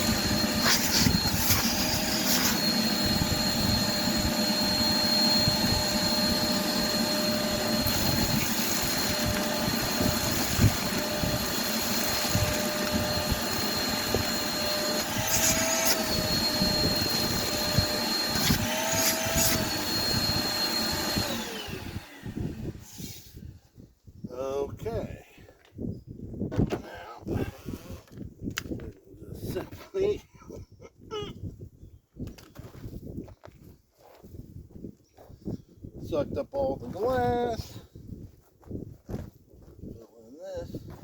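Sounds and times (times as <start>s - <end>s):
vacuum sucking up broken glass: 0.0s - 21.4s
vacuum motor winding down: 0.0s - 22.9s
shop vacuum running: 0.0s - 23.2s.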